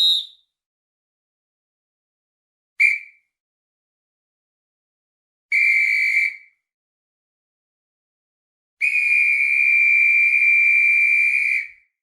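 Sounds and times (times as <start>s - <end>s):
whistle blasts: 0.0s - 0.5s, 2.8s - 3.2s, 5.5s - 6.6s, 8.8s - 12.0s.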